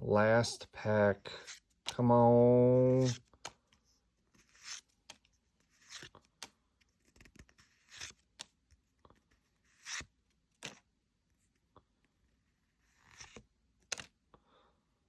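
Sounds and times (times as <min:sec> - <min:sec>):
cards handled with light clicks: 0:02.9 - 0:10.8, 0:13.0 - 0:14.2.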